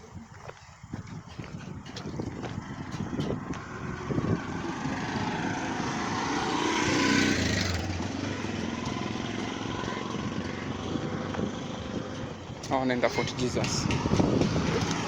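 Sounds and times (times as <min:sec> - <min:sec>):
vehicle passing on road: 0:01.5 - 0:15.0.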